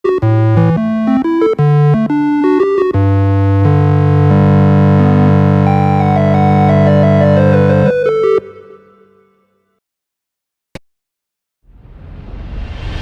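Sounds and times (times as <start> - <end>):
synthesizer music: 0.1 - 9.3.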